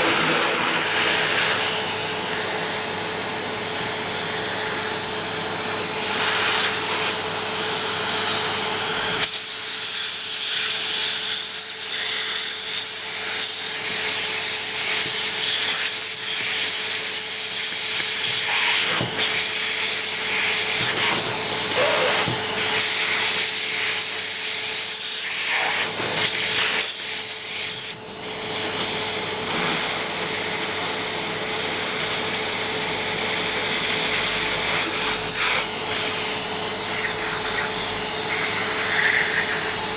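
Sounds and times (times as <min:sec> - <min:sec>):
vacuum rubbing against a surface: 0:00.0 - 0:02.9, 0:33.3 - 0:39.9
stick vacuum motor whine: 0:00.0 - 0:39.9.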